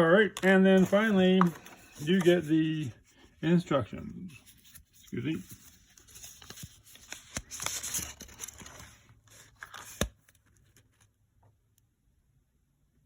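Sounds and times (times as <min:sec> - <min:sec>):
paper rustling and crinkling: 0:00.3 - 0:03.3, 0:04.3 - 0:11.1
paper snap: 0:09.6 - 0:10.3.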